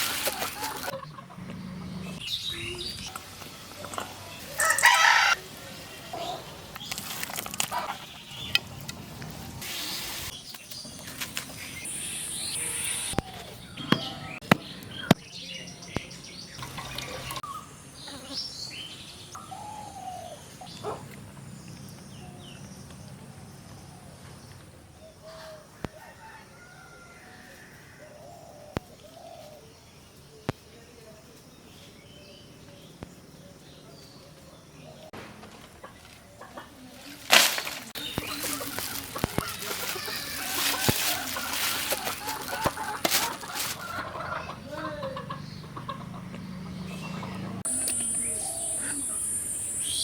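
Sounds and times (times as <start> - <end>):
wings flapping: 0.0 - 1.0, 37.3 - 44.0
chickens clucking: 0.0 - 2.2, 7.5 - 9.0, 35.7 - 37.2, 37.8 - 49.2
birds calling: 0.0 - 5.4, 6.0 - 25.9, 35.8 - 50.0.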